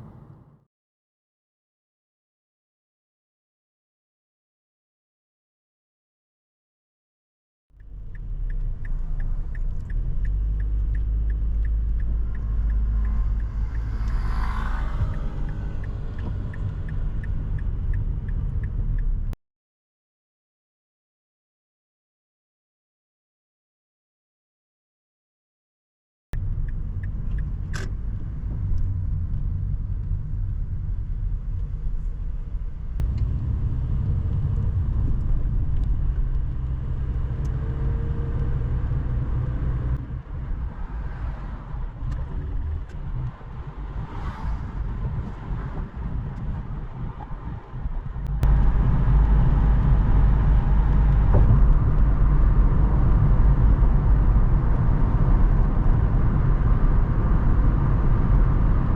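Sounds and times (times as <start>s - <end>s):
road traffic rumble: 0.0s - 0.6s, 7.7s - 19.4s, 26.4s - 58.9s.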